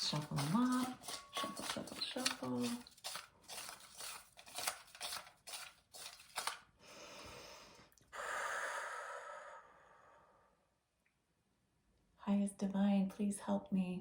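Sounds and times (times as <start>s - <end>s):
paper rustling: 0.0s - 6.7s
paper swishing: 1.6s - 6.6s.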